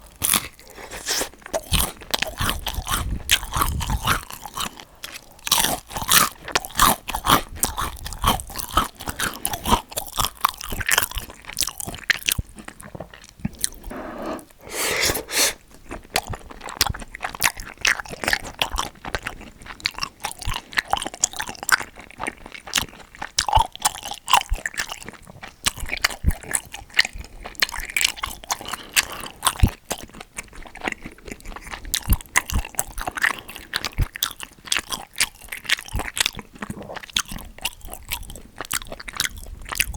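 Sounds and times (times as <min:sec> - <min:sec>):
person chewing food: 0:00.0 - 0:39.9.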